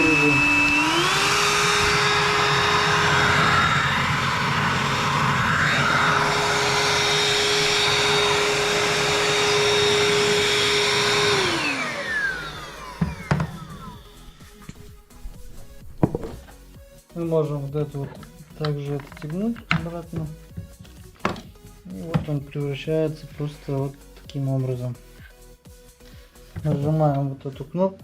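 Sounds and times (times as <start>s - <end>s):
vacuum cleaner motor whine: 0.0s - 16.3s.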